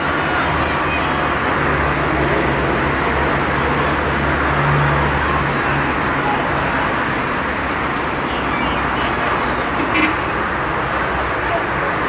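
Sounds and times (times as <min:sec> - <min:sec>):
road traffic noise: 0:00.0 - 0:12.0.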